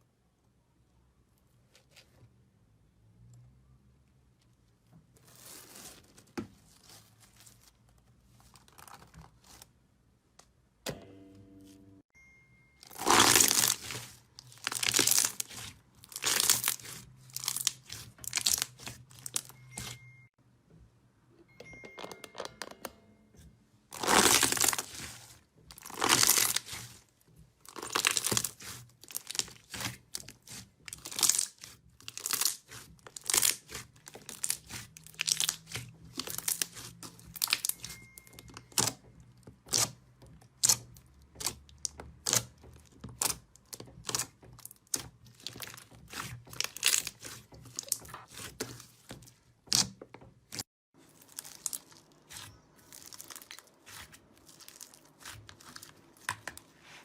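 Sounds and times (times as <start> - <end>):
brittle material crackling and breaking: 12.9 - 19.9, 24.0 - 25.0, 25.7 - 27.0, 27.6 - 37.8, 40.6 - 56.5.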